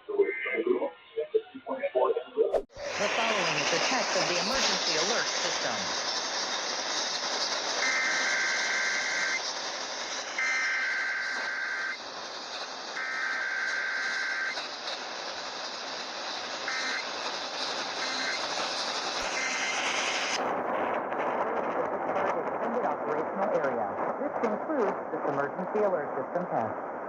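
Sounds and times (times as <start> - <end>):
radio hiss: 0.0 - 27.0
two-tone digital data bursts: 2.9 - 6.1, 7.8 - 12.0, 16.6 - 17.1.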